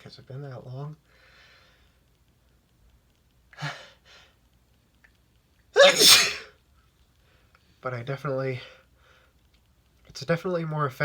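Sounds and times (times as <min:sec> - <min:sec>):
man sneezing with a cry: 0:05.8 - 0:06.5.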